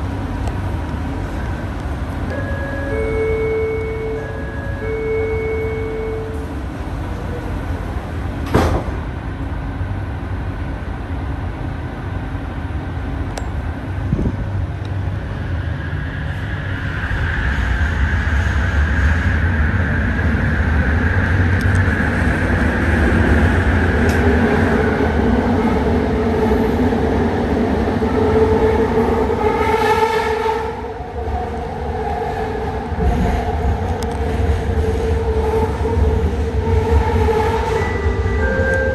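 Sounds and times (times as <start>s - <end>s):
metro car interior rumble: 0.0s - 15.6s, 16.2s - 38.9s
multi-tone whine: 1.2s - 8.3s.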